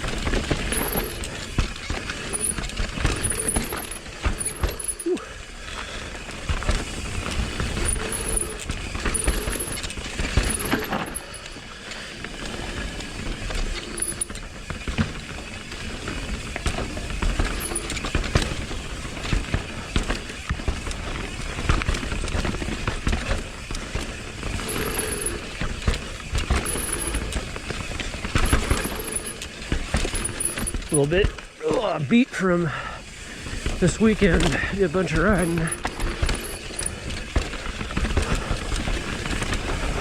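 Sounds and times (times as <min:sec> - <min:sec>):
bike rattling: 0:00.0 - 0:40.0
bike tyres rumbling on dirt: 0:00.0 - 0:40.0
disc brake squeals: 0:24.6 - 0:25.5.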